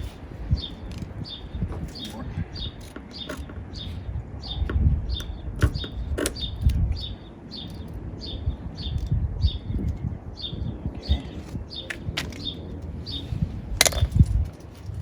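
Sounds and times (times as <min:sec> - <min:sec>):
bird chirping: 0:00.0 - 0:14.3.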